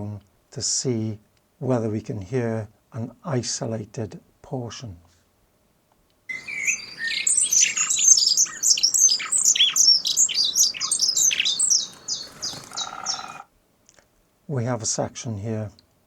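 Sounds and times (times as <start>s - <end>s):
songbirds singing: 6.3s - 13.5s.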